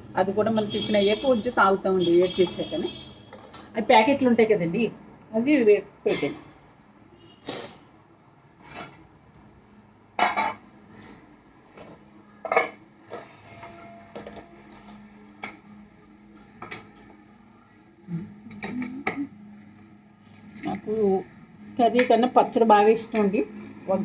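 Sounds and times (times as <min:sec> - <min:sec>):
dishes and cutlery clinking: 0:10.2 - 0:11.2, 0:11.8 - 0:17.2.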